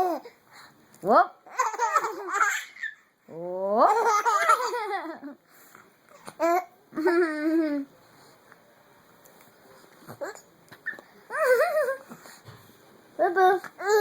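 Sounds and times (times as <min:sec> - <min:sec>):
baby laughing: 0:01.5 - 0:03.0, 0:03.9 - 0:05.2.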